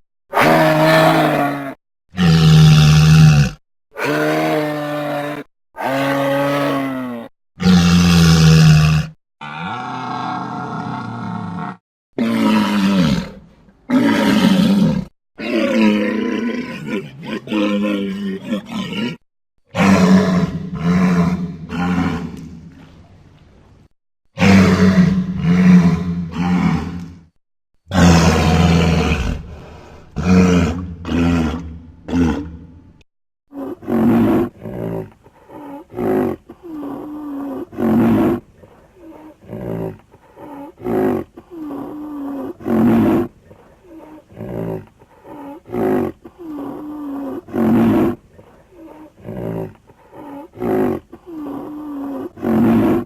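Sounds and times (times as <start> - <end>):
creature deep roars: 0.3 - 22.5, 24.4 - 27.3, 27.9 - 32.8, 48.9 - 53.0.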